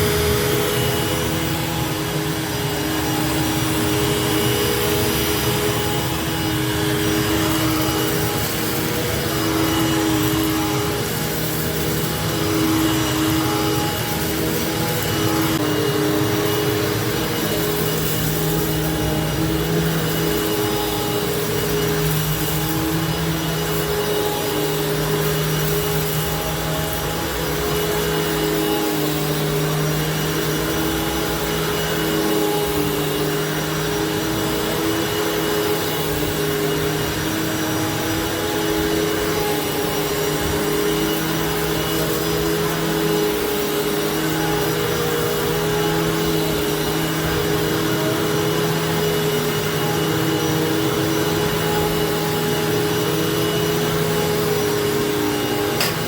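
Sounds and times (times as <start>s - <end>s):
vacuum cleaner running: 0.0s - 56.0s.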